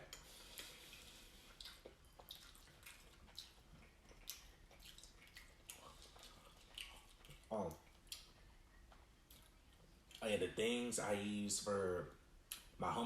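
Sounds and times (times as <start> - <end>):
wet chewing mouth sounds: 0.5 - 10.2.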